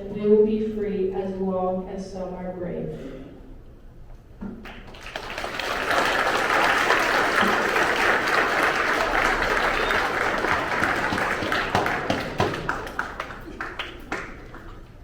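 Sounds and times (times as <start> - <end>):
audience applauding: 4.6 - 15.0.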